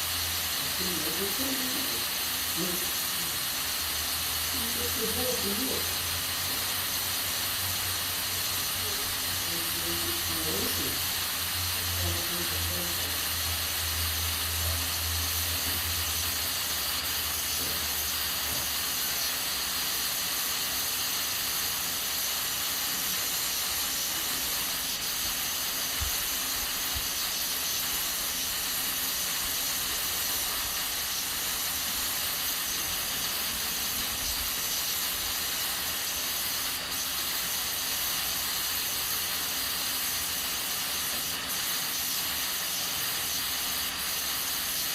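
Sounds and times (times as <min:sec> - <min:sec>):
pressure cooker hissing steam: 0:00.0 - 0:44.9.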